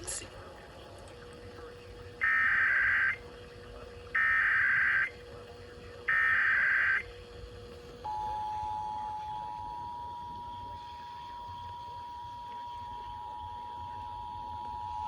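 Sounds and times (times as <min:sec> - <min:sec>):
harsh buzzing data bursts: 0:02.2 - 0:03.2, 0:04.2 - 0:05.1, 0:06.1 - 0:07.1
two-tone attention signal: 0:08.0 - 0:10.8.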